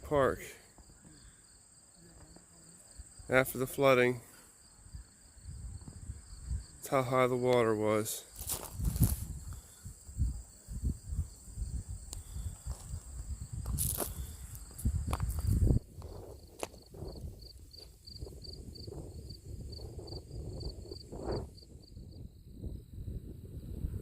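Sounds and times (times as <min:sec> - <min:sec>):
insects calling: 0:00.0 - 0:22.5
footsteps on ground: 0:08.3 - 0:09.6, 0:12.2 - 0:16.9.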